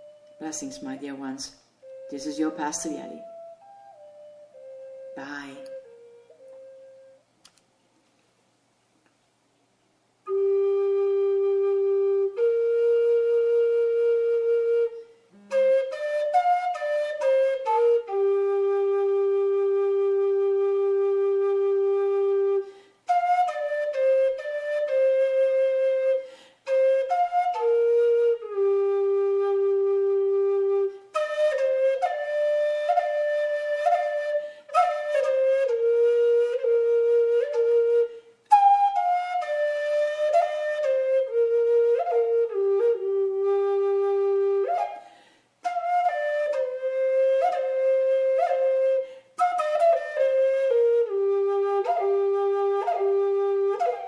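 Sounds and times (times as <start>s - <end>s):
solo flute melody: 0.0s - 7.3s, 10.2s - 54.0s.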